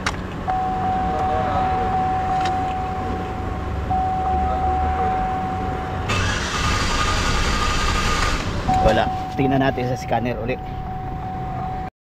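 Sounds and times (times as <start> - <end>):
low vehicle rumble: 0.0 - 11.9
high-pitched electronic tone: 0.5 - 6.6.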